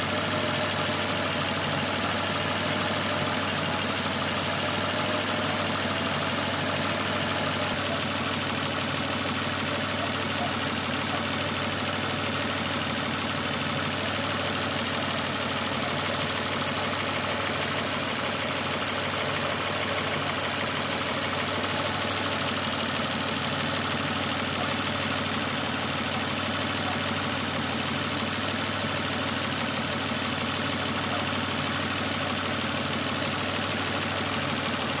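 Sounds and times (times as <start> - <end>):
car engine idling: 0.0 - 35.0
engine tapping: 0.0 - 35.0.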